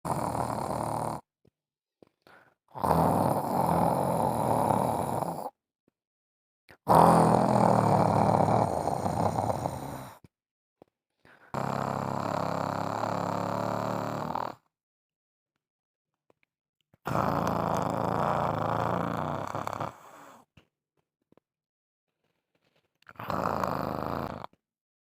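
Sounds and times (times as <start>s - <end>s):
person snoring: 0.0s - 1.3s, 2.3s - 5.6s, 6.7s - 10.2s, 11.3s - 14.7s, 17.1s - 20.5s, 23.0s - 24.6s.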